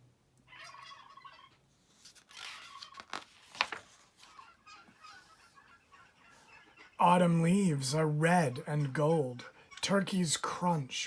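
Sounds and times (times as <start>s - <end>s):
turkeys gobbling: 0.5s - 1.6s, 4.4s - 7.0s.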